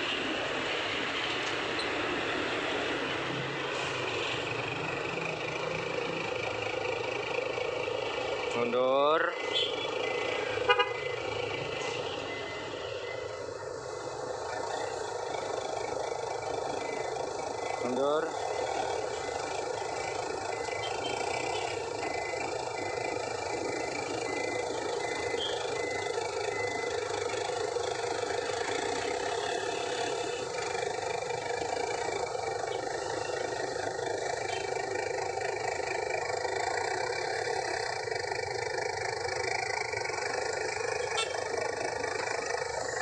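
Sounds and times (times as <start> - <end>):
bus engine running: 0.0 - 43.0
road traffic noise: 0.0 - 43.0
reversing alarm beeping: 1.7 - 43.0.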